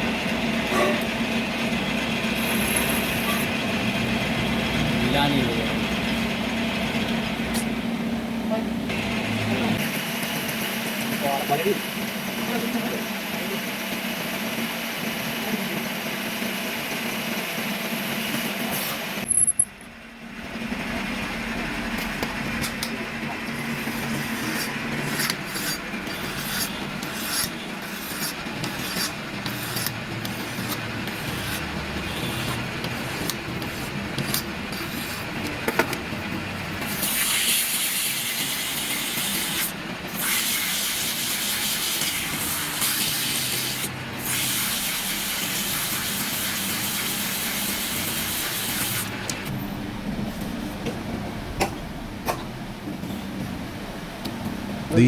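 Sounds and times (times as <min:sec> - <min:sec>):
lathe motor hum: 0:20.3 - 0:37.0
metal scraping on turning steel: 0:23.4 - 0:35.8.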